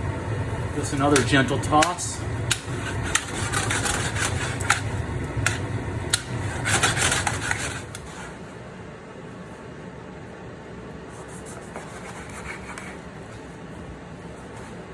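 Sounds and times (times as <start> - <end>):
steady low hum: 0.0 - 14.9
utensil clicking against pan: 1.1 - 8.0
utensil scraping a pan: 2.8 - 4.9, 6.4 - 8.4.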